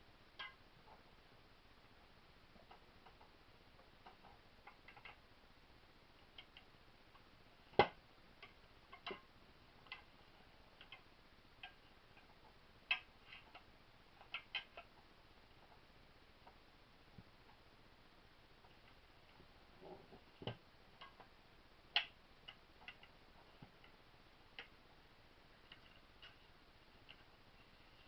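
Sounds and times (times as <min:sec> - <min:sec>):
small clicks of parts being handled: 0:02.6 - 0:05.2, 0:10.7 - 0:16.6, 0:20.1 - 0:24.8, 0:25.6 - 0:28.0.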